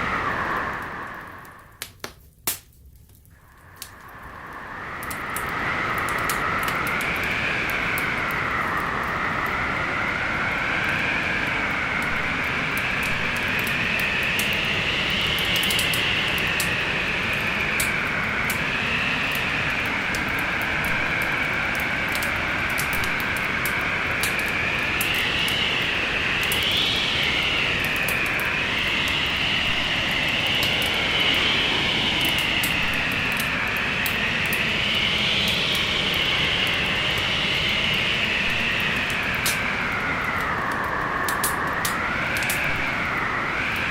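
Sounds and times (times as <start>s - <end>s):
storm wind howling: 0.0s - 2.6s, 3.4s - 43.9s
fireplace fire crackling: 0.1s - 7.8s, 38.6s - 43.2s.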